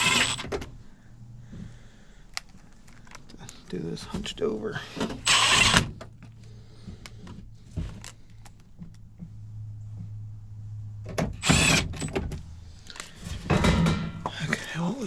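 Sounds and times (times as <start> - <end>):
screw gun whirring: 0.0 - 0.5, 5.2 - 5.9, 11.4 - 12.1
steady low hum: 0.0 - 15.0.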